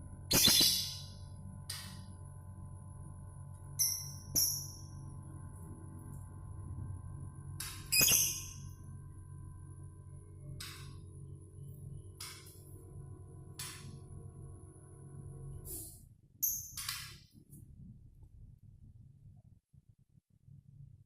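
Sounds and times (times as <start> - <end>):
low hum: 0.0 - 16.2
caged birds calling: 0.3 - 1.1.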